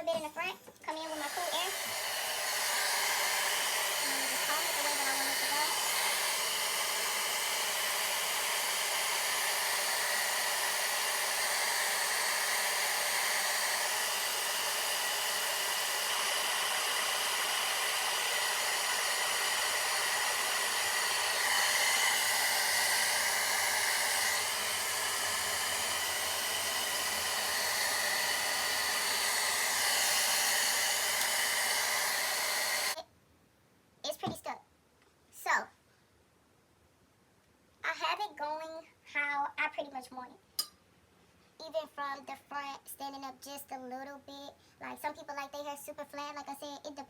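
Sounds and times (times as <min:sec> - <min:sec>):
blow dryer blowing air: 0:00.9 - 0:33.0.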